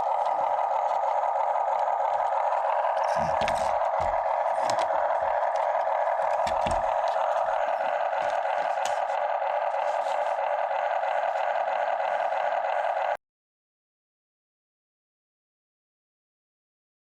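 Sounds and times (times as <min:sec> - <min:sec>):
small electric motors whirring: 0:00.0 - 0:13.2.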